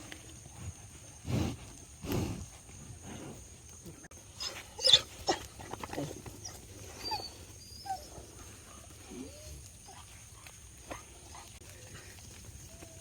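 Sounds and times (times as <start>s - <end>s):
farm animals calling and whining: 4.2s - 13.0s.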